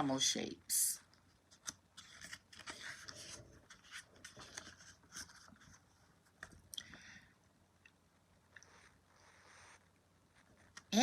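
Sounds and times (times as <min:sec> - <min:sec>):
book page turning: 0:01.1 - 0:06.7
paper rustling: 0:01.2 - 0:06.7.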